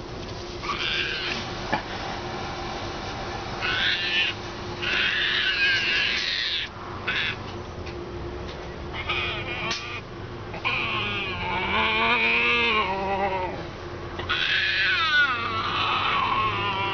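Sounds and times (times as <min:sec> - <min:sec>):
hyena pup high-pitched cries: 0:00.6 - 0:01.4, 0:03.6 - 0:07.4, 0:08.9 - 0:13.6, 0:14.2 - 0:16.9.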